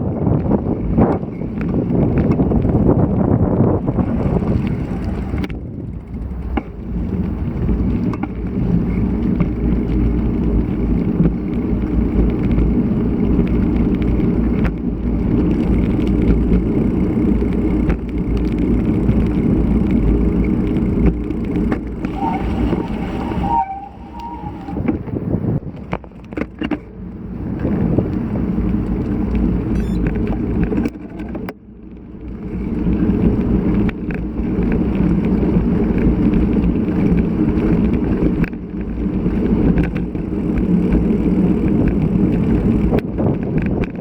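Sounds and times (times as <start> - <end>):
wind buffeting microphone: 0.0 - 31.6, 32.2 - 44.0
bicycle tyres rumbling on road: 0.0 - 44.0
bike clicks and knocks: 0.2 - 22.2, 24.8 - 44.0
high squeal: 22.0 - 24.9, 29.8 - 30.0.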